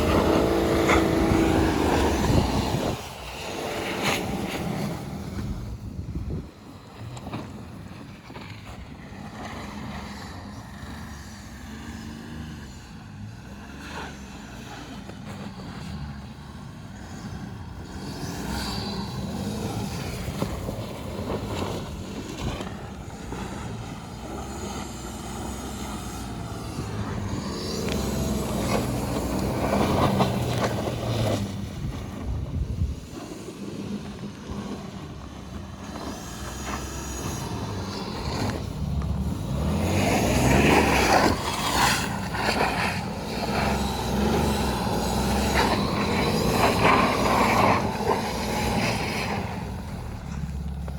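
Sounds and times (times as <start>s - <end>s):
car engine revving hard: 0.0s - 5.1s, 23.2s - 31.7s, 35.8s - 50.9s.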